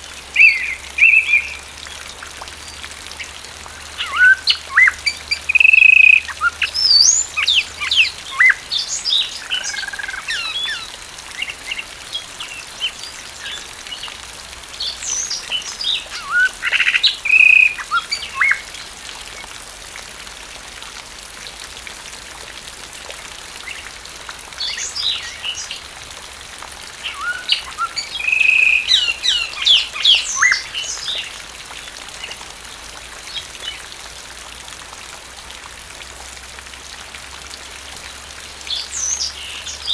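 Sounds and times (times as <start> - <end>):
rain hiss: 0.0 - 39.9
bird singing chirps and whistles: 4.0 - 10.9, 27.1 - 31.2.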